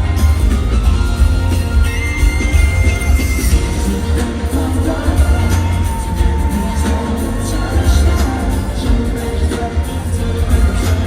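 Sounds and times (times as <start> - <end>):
loud pop music through speakers: 0.0 - 11.0.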